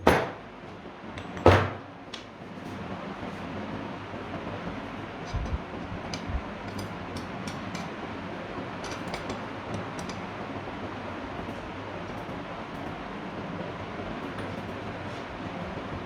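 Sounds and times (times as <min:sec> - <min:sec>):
ceiling fan whirring: 0:00.0 - 0:16.0
light ticking of fan bearing: 0:05.2 - 0:13.1.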